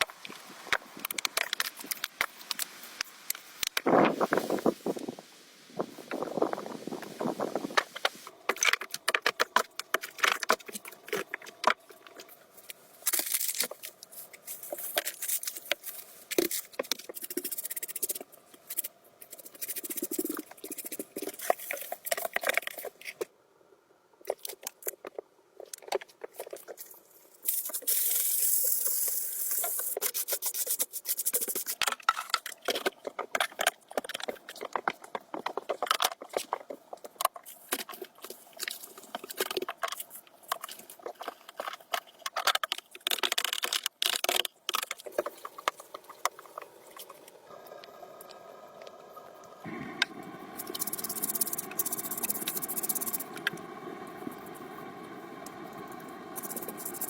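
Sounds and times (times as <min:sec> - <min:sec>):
hands scraping and clicking: 0:00.0 - 0:03.9, 0:07.8 - 0:23.3, 0:29.5 - 0:47.3
hissing scrapes: 0:49.6 - 0:57.0.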